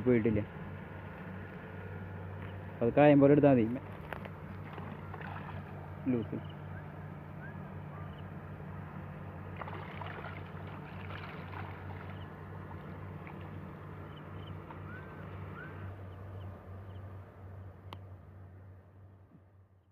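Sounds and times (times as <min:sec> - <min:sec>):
steady low hum: 0:00.0 - 0:19.9.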